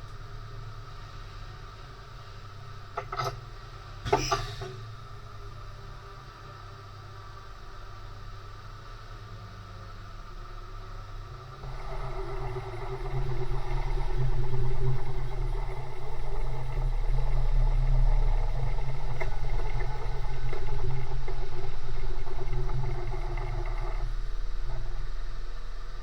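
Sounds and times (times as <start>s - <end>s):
milling machine humming: 11.1s - 26.0s.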